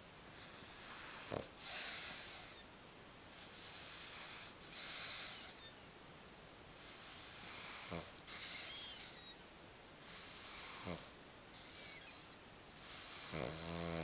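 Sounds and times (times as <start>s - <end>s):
dog snoring wheezily: 0.4s - 2.6s, 3.4s - 5.7s, 6.8s - 9.4s, 10.0s - 14.0s
dog rattling snort: 12.9s - 14.0s.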